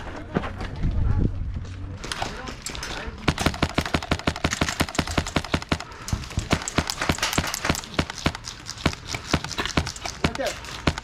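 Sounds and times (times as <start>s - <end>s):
airsoft guns firing: 3.2s - 11.0s.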